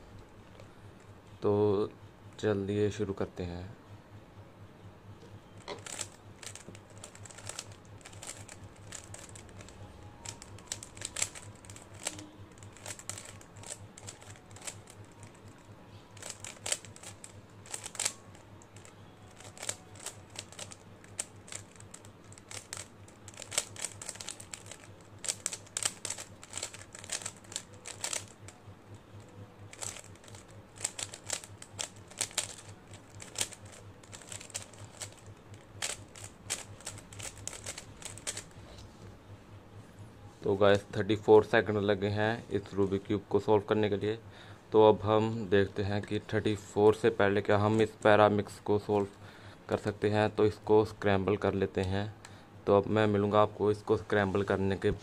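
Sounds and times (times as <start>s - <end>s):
puzzle cube clicking turns: 5.6s - 28.5s, 29.7s - 38.6s.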